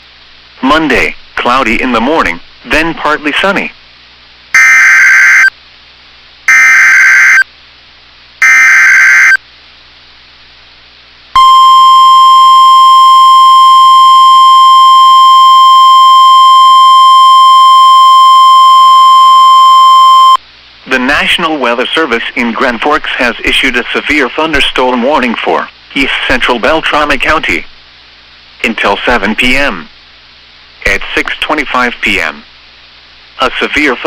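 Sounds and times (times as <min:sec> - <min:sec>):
steady warning alarm tone: 0:04.6 - 0:05.5, 0:06.5 - 0:07.5, 0:08.4 - 0:09.4.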